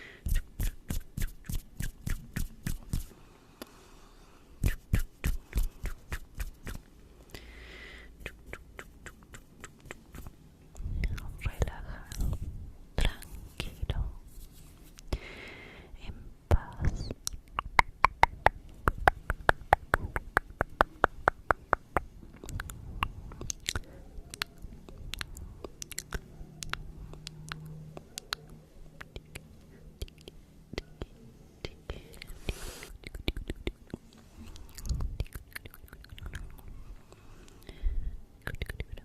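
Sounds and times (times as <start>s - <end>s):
wet mouth clicks: 0.3s - 3.7s, 4.6s - 6.9s, 8.2s - 11.3s, 16.6s - 31.1s, 32.0s - 36.8s, 38.4s - 39.0s.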